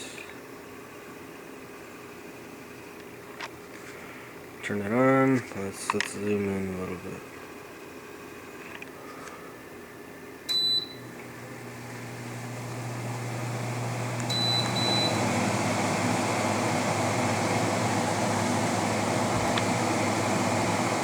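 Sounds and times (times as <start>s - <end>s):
air conditioner fan humming: 0.0s - 21.0s
air conditioner beep: 10.5s - 11.2s, 14.3s - 16.0s.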